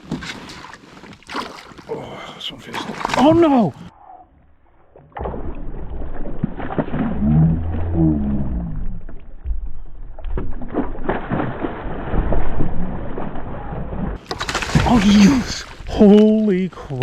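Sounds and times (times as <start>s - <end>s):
water sloshing: 0.0s - 3.8s, 4.9s - 17.0s
short low pitched sound: 5.2s - 10.7s.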